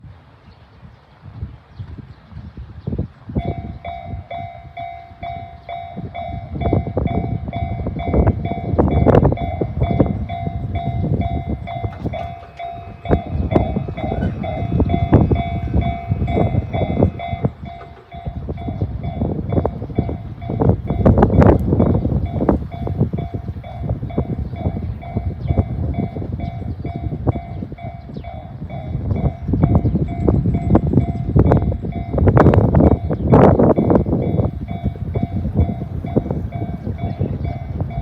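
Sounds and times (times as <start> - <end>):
level crossing warning bell: 3.4 - 38.0
low irregular rumble: 9.6 - 19.2.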